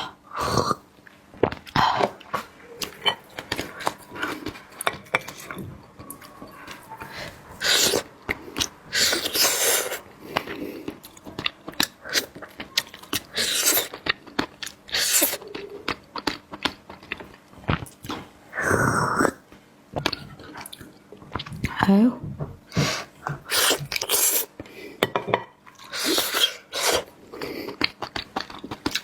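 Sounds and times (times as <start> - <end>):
wet chewing and smacking: 1.0 - 18.3, 25.7 - 29.0.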